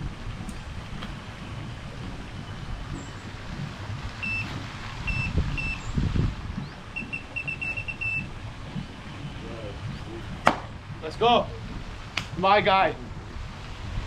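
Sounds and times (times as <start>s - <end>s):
wind buffeting microphone: 0.0s - 14.0s
short high beeps: 4.2s - 4.5s, 7.0s - 8.3s.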